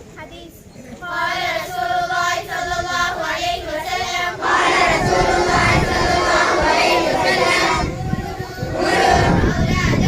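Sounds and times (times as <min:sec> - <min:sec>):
students singing in unison: 0:01.0 - 0:10.0
crowd shouting together: 0:03.8 - 0:10.0.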